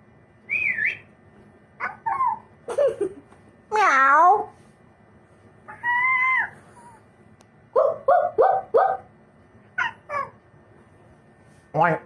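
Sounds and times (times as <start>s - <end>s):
person imitating dog yelps: 1.8s - 2.5s, 5.7s - 6.6s, 7.8s - 9.0s
person imitating dog howl: 5.7s - 6.6s.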